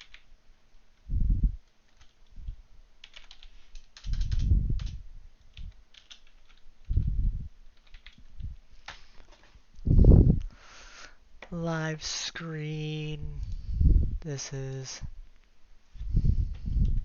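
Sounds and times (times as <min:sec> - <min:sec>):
computer keyboard typing: 0:00.0 - 0:00.3, 0:01.6 - 0:07.1, 0:07.7 - 0:09.4.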